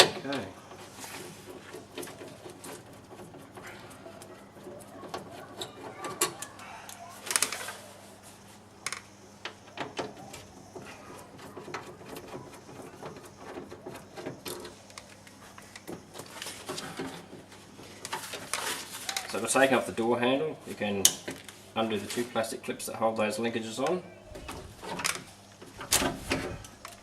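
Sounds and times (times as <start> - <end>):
hand tools clicking and rattling: 0.0 - 7.8, 8.8 - 19.6.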